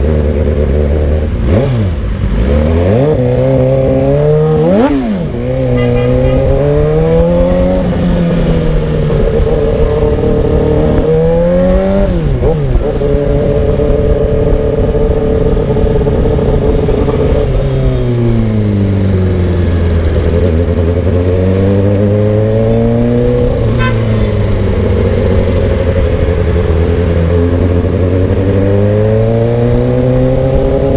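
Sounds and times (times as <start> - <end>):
motorcycle engine revving: 0.0 - 30.9.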